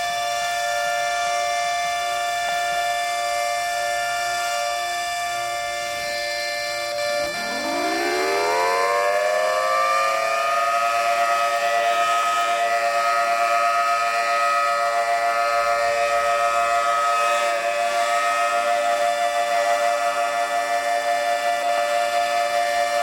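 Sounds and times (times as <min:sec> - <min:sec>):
outdoor warning sirens chord: 0:00.0 - 0:23.0.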